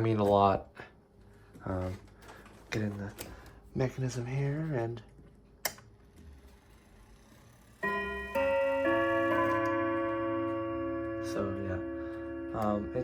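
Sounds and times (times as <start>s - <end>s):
clock chime rods melody: 7.8s - 13.0s.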